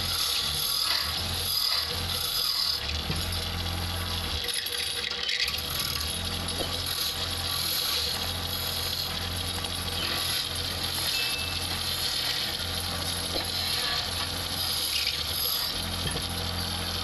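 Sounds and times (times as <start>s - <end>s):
wood lathe running: 0.0s - 17.0s.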